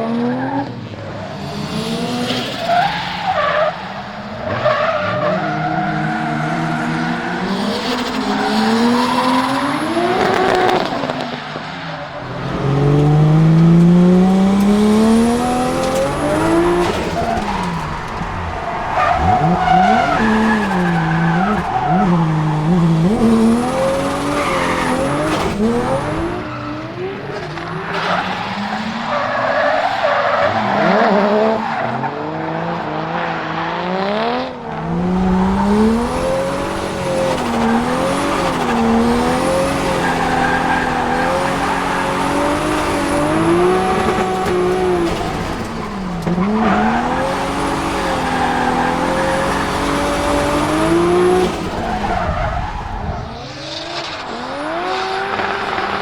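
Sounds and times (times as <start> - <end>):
car engine revving: 0.0 - 56.0
tyres squealing: 11.8 - 31.8, 35.2 - 56.0.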